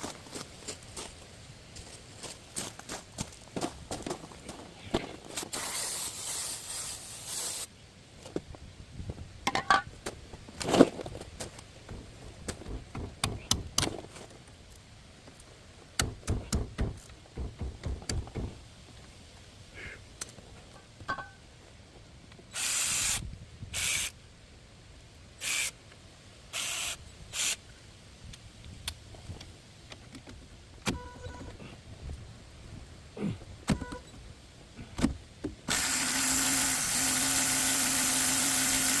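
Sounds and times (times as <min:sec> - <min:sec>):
aerosol can spraying: 0:05.5 - 0:07.7.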